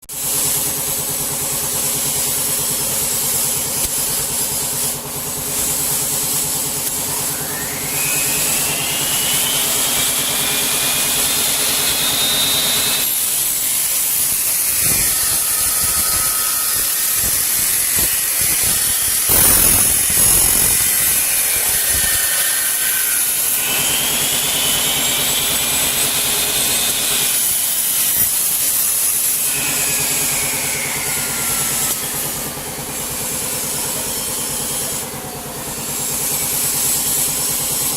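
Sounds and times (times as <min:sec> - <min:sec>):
cutting saw motor hum: 0:00.3 - 0:37.9
high whining tones: 0:06.8 - 0:13.2.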